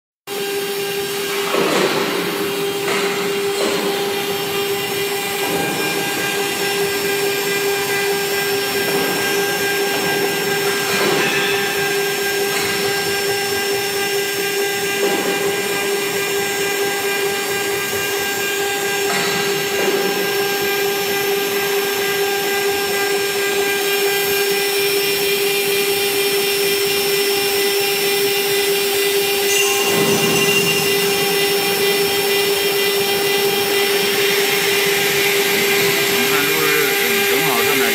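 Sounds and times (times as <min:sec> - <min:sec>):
router spindle whine: 0:00.3 - 0:37.9
bit cutting wood: 0:24.3 - 0:37.9.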